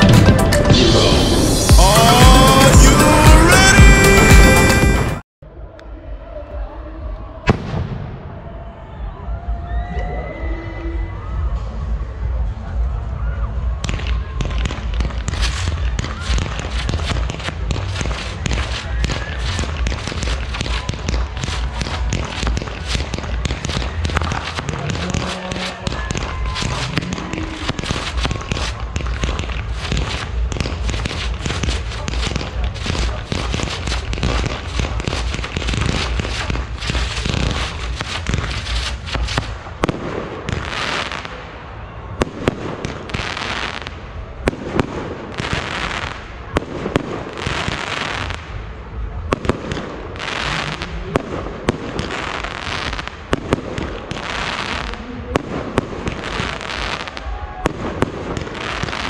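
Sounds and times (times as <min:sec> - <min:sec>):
fireworks crackling and booming: 0:00.0 - 0:05.2, 0:07.0 - 0:09.6, 0:11.3 - 0:59.0
firework bangs: 0:13.6 - 0:59.0
hissing crackle: 0:15.3 - 0:39.8.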